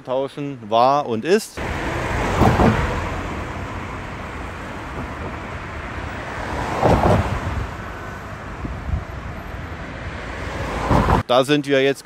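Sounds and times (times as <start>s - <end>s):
vehicle passing: 1.6s - 11.2s
road traffic: 1.6s - 11.3s.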